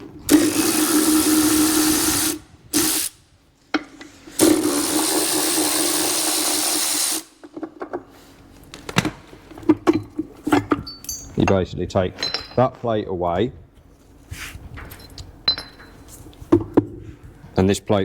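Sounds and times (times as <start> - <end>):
cordless power drill running: 0.3 - 3.2, 4.4 - 7.4.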